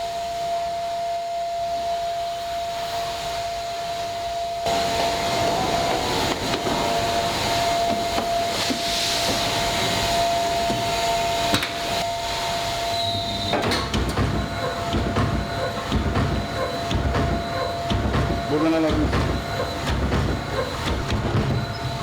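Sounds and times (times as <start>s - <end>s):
machinery whine: 0.0s - 22.0s
mechanical din: 13.0s - 22.0s
deep rumble: 14.0s - 22.0s.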